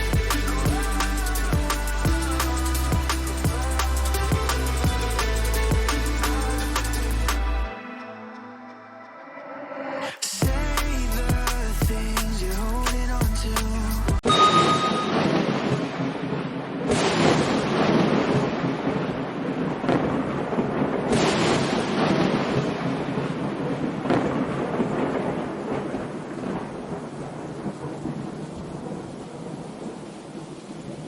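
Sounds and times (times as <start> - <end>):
thunder rolling: 0.0 - 7.6, 15.0 - 31.0
steady rain: 0.0 - 7.8, 15.2 - 31.0.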